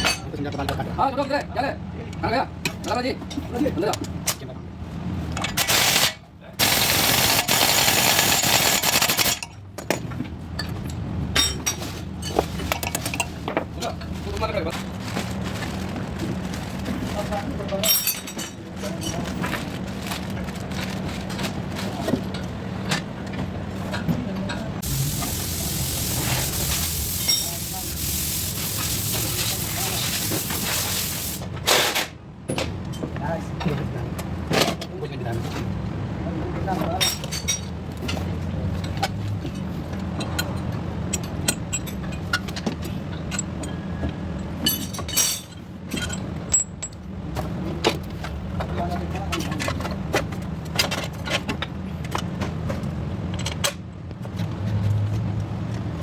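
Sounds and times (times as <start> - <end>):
low mechanical hum: 0.0 - 56.0
loud spray hiss: 24.8 - 31.4.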